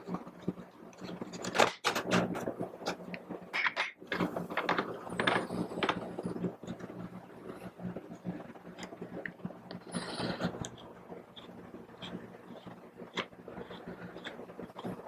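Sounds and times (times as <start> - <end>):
parts knocking and clattering: 1.4 - 3.0.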